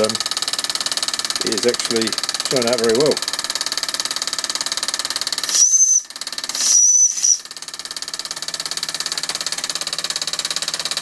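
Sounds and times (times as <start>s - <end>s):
steam whistle: 5.4s - 7.4s
steam engine exhaust beat: 5.4s - 7.5s.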